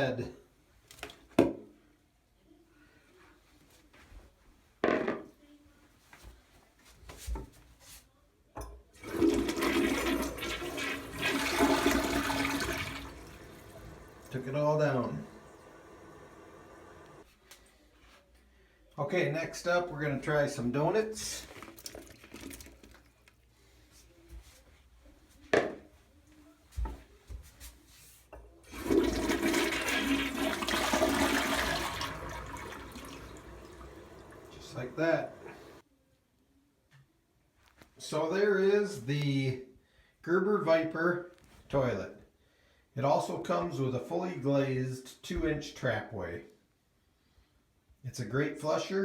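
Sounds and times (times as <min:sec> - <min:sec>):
toilet flush clunk: 0:09.0 - 0:17.2, 0:28.7 - 0:35.8
toilet flushing water rush: 0:09.0 - 0:17.2, 0:28.7 - 0:35.8.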